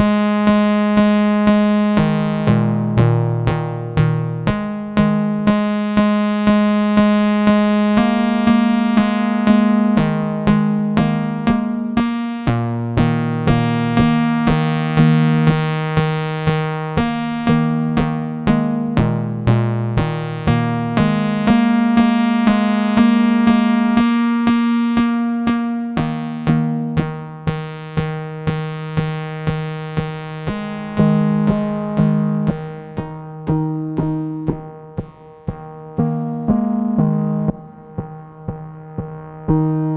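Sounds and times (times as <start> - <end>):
plucked synthesizer notes: 0.0 - 39.9
delay echoes: 30.5 - 39.9.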